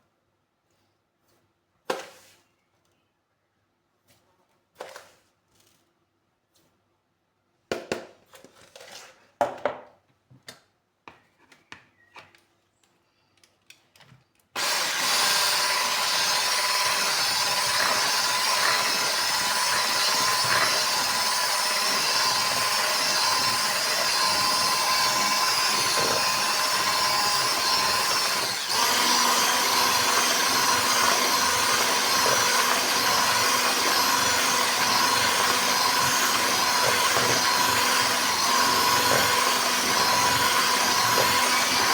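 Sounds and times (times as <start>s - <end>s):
kitchen appliance motor whining: 14.6s - 41.9s.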